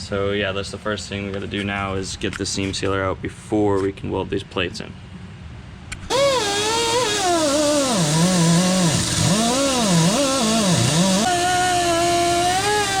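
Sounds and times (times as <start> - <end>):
wire wheel grinder scrubbing metal: 6.1 - 13.0.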